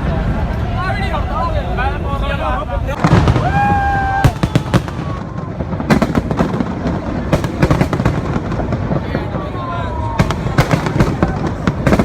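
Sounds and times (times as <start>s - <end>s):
fireworks crackling pops: 3.0s - 12.0s.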